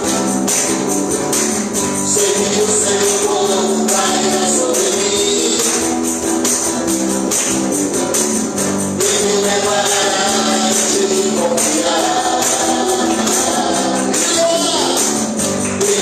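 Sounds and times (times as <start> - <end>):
tambourine shaking: 0.0 - 16.0
worship band playing: 0.0 - 16.0
people singing: 1.9 - 6.7, 8.9 - 16.0.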